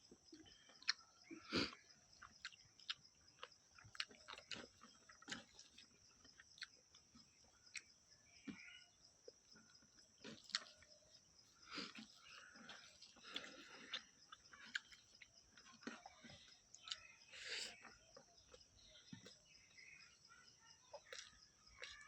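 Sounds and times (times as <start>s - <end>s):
person chewing: 0.3s - 19.4s, 20.9s - 22.0s.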